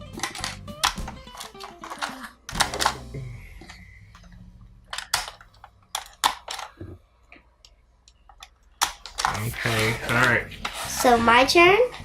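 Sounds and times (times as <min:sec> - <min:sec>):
plastic game pieces clicking: 0:00.0 - 0:03.0, 0:04.9 - 0:06.8, 0:08.3 - 0:10.8
low hum: 0:02.6 - 0:06.2.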